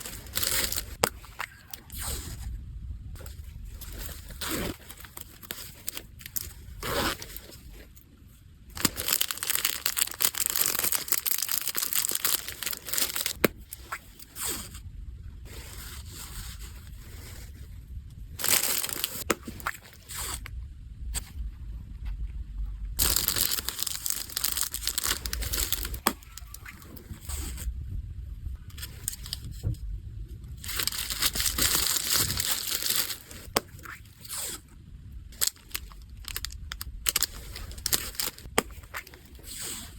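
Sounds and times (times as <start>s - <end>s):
packaging rustling and crinkling: 0.0s - 2.4s, 3.2s - 7.9s, 8.7s - 14.8s, 18.4s - 20.4s, 23.0s - 27.7s, 28.7s - 29.7s, 30.6s - 33.9s, 35.3s - 39.9s.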